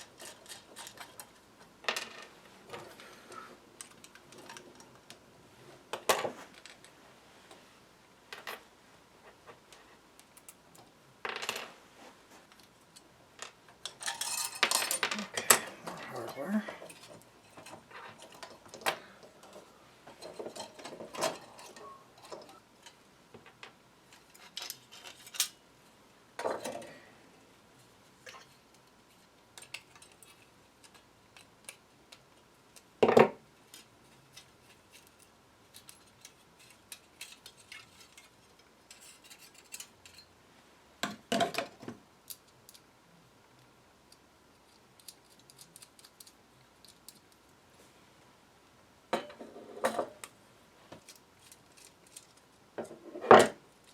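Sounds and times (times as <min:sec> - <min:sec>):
metal hardware clinking: 0:13.8 - 0:16.0.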